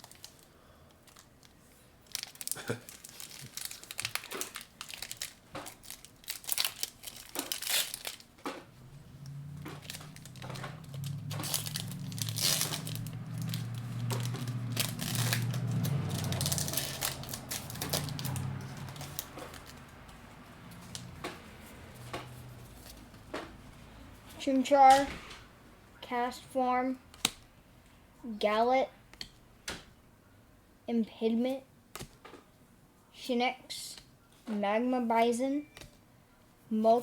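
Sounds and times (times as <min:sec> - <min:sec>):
foil wrapper tearing and crinkling: 0:00.0 - 0:08.4, 0:09.8 - 0:19.9
low steady hum: 0:00.0 - 0:29.4.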